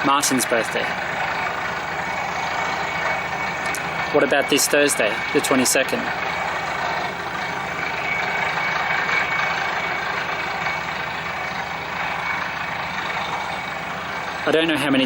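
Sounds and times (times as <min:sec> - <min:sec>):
heavy drilling rig engine: 0:00.0 - 0:15.0
thin steady whine: 0:00.0 - 0:15.0.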